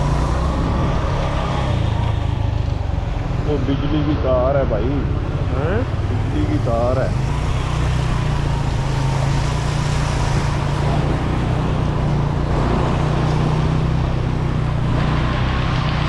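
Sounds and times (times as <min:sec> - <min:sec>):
motorcycle engine running: 0:00.0 - 0:16.0
tyres hissing through water: 0:07.4 - 0:16.0.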